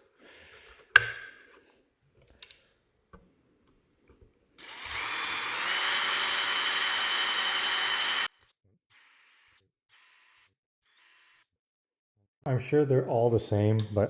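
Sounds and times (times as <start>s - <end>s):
electric drill drilling plastic: 4.6s - 11.5s.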